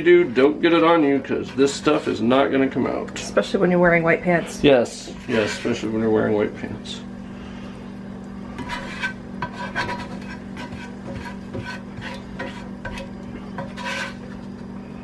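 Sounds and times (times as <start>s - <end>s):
steady low hum: 0.0s - 15.0s
spoon scraping cooking pot: 1.0s - 2.3s, 5.1s - 6.0s, 8.6s - 14.5s.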